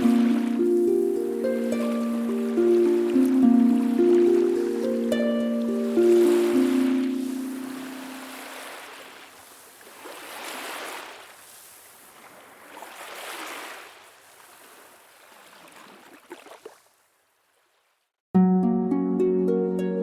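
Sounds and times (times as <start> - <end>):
harp playing: 0.0 - 8.7, 18.4 - 20.0
waves washing on shore: 0.0 - 16.8.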